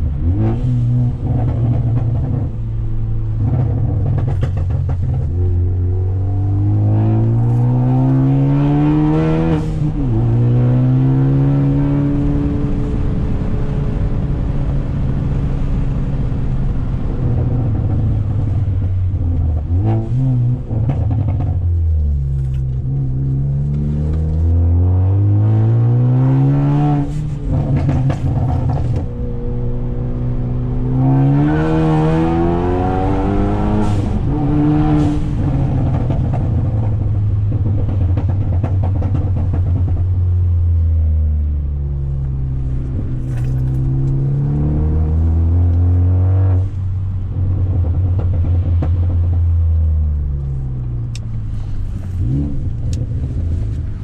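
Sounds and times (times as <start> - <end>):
exhaust cracks: 0.0 - 6.0, 26.9 - 29.7, 46.5 - 54.0
turbocharged car engine accelerating: 0.0 - 54.0.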